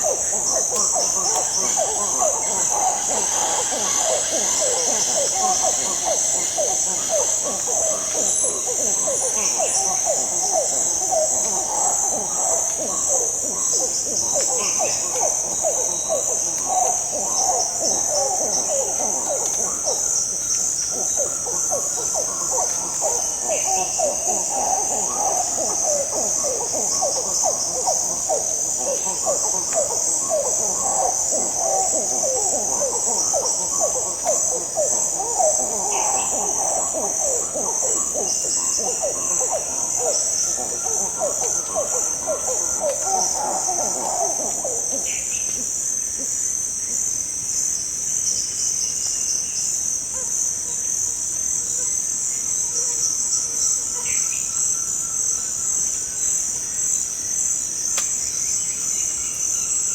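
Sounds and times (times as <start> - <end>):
rapid monkey calls: 0.0 - 46.5
high-pitched insect chorus: 0.0 - 59.9.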